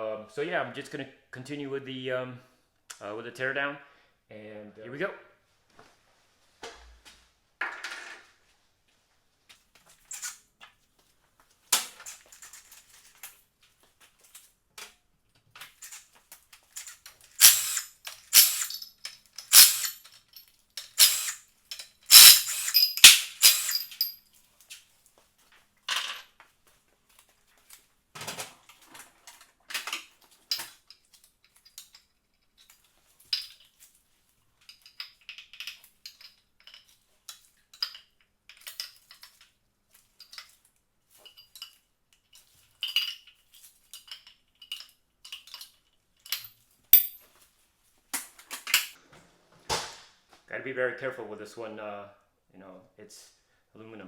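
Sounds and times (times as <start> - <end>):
metal tools and parts clanking: 16.8 - 24.2, 46.3 - 47.2.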